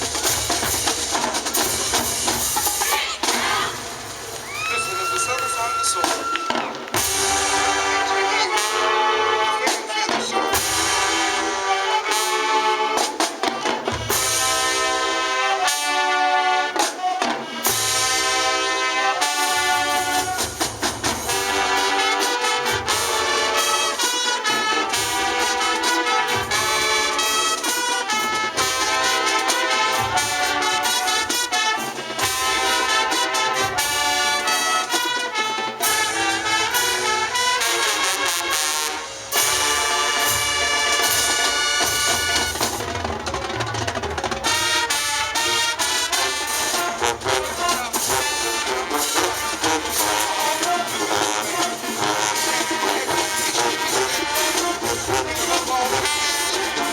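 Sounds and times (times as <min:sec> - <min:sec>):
marching band playing brass tune: 0:00.0 - 0:56.9.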